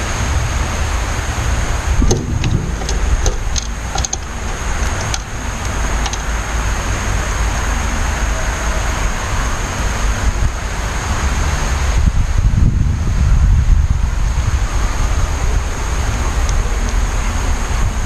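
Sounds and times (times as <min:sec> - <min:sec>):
low rumble: 0:00.0 - 0:07.2.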